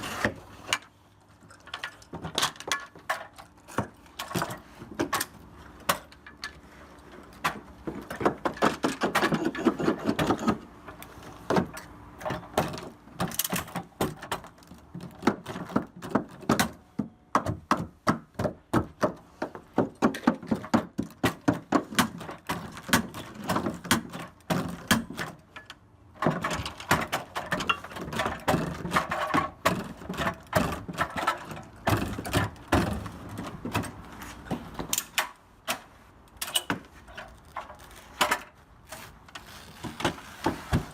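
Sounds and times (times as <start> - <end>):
tools knocking and thumping: 7.4 - 35.8.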